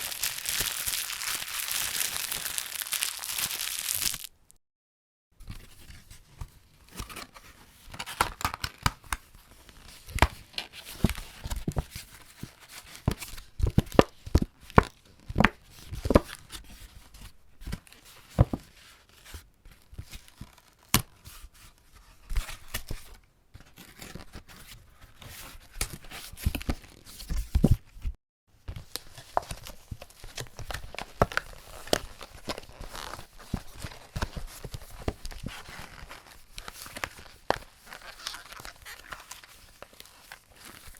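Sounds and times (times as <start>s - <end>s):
cardboard packaging crackling: 0.0s - 4.6s, 35.3s - 40.9s
packaging crinkling as folded: 0.0s - 4.6s, 28.9s - 40.9s.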